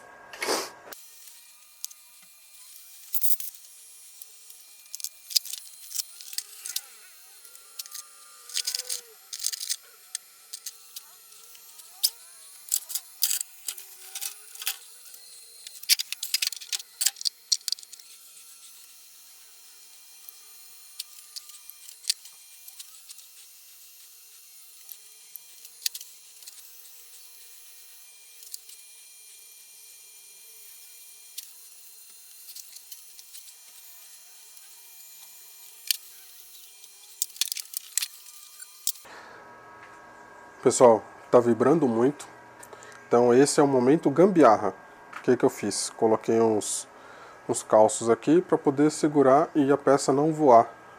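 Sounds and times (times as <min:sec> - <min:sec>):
metal tools clicking and tapping: 0:03.1 - 0:03.7, 0:04.8 - 0:06.9, 0:07.5 - 0:18.1, 0:21.0 - 0:23.2, 0:25.7 - 0:26.6, 0:35.8 - 0:39.0.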